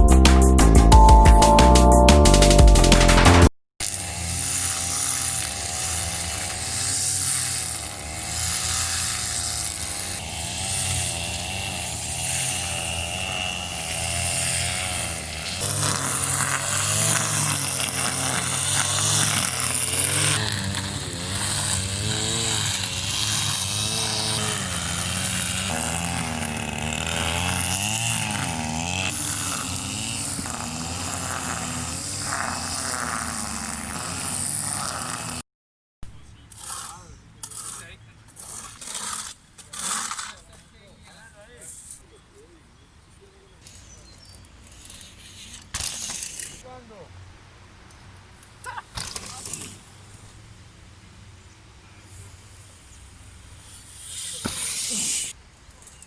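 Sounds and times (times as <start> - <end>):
small engine running: 3.8 - 35.4.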